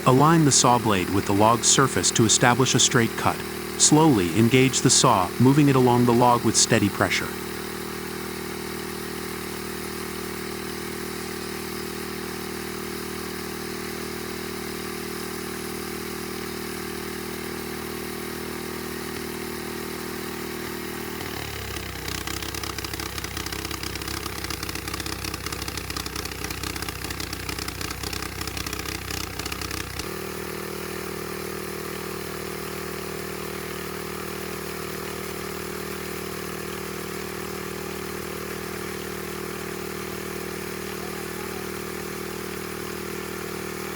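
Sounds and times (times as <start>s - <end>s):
engine-driven saw running: 0.0s - 4.4s, 7.4s - 43.9s.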